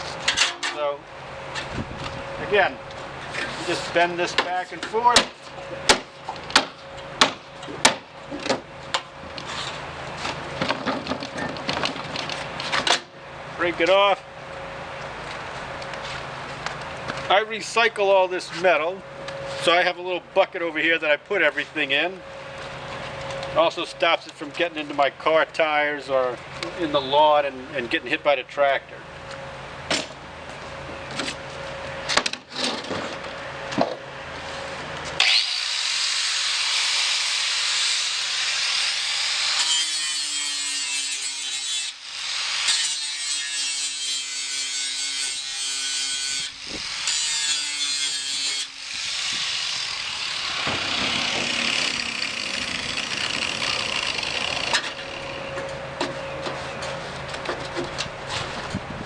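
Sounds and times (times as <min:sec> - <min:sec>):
grinder grinding metal: 0:35.2 - 0:55.5.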